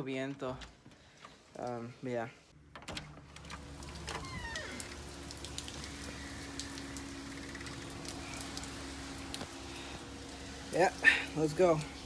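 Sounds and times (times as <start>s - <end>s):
rain falling: 3.2s - 12.0s.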